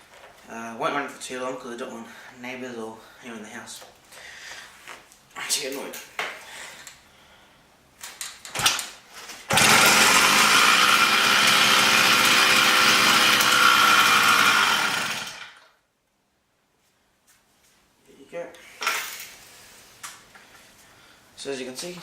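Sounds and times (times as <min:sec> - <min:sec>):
two-stroke engine starting and running: 0:09.5 - 0:15.7.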